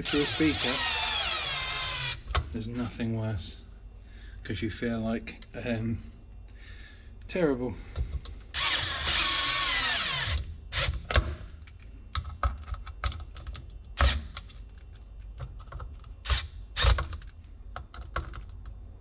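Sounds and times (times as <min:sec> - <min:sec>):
cordless drill driving screw: 0:00.0 - 0:02.2, 0:08.6 - 0:10.9.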